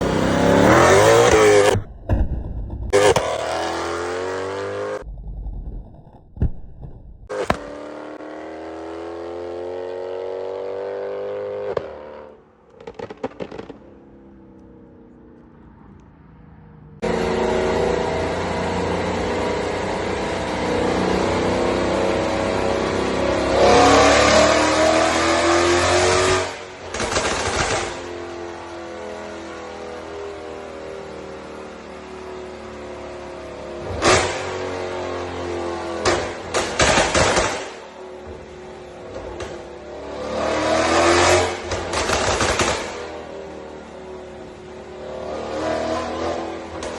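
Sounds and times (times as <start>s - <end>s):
car engine revving: 0.0s - 5.1s
exhaust crackles and pops: 1.2s - 3.7s, 5.0s - 7.8s, 12.6s - 14.7s, 41.6s - 43.0s.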